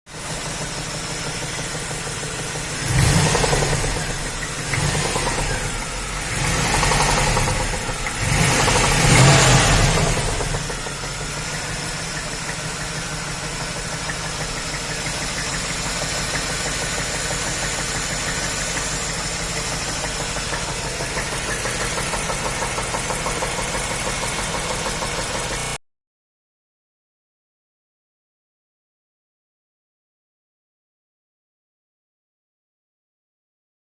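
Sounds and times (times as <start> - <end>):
car engine idling and revving: 0.1 - 25.8
engine knocking and squeaking: 0.1 - 25.8.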